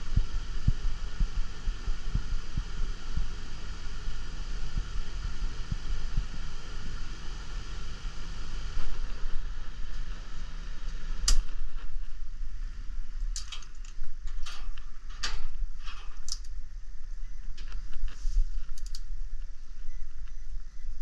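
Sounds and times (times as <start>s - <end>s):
air conditioner unit humming: 0.0s - 21.0s.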